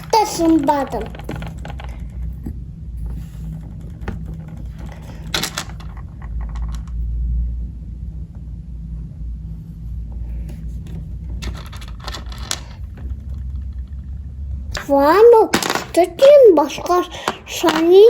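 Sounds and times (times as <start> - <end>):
toys clicking and rattling: 0.0 - 2.4, 3.4 - 7.0, 11.4 - 18.0
steady low hum: 0.0 - 18.0.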